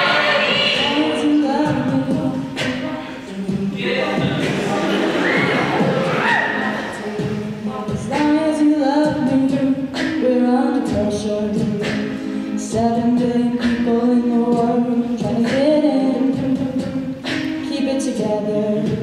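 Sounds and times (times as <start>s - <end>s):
a cappella group singing chords: 0.0s - 19.0s.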